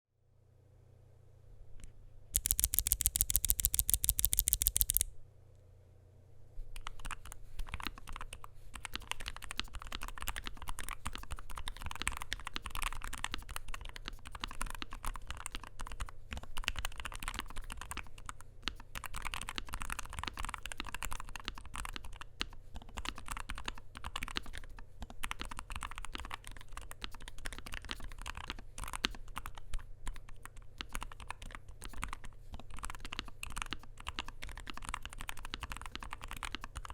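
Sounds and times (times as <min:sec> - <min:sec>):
mechanical keyboard typing: 0:02.4 - 0:05.1, 0:06.8 - 0:36.9
rapid loud clicks: 0:02.4 - 0:05.1.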